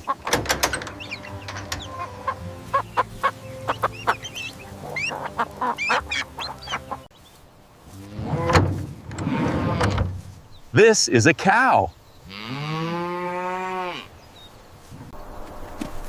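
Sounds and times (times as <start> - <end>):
chicken clucking: 0.0 - 7.2.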